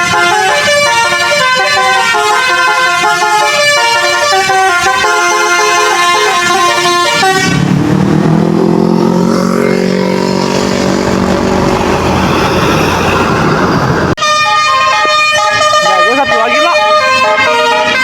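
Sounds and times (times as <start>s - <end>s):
musical bus horn tune: 0.0s - 7.8s, 14.1s - 18.0s
bus engine running: 0.0s - 14.2s.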